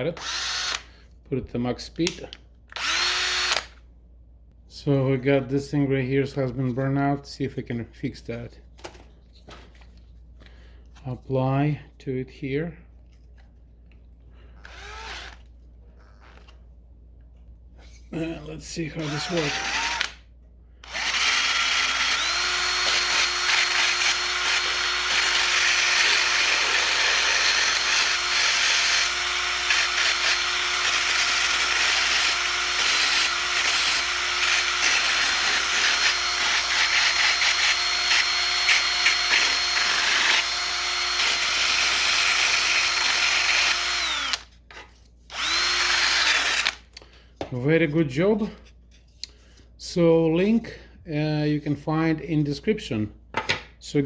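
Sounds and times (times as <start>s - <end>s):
electric drill sanding disc grinding: 0.2s - 0.9s, 2.8s - 3.8s, 14.7s - 16.5s, 19.0s - 20.2s, 20.8s - 46.8s.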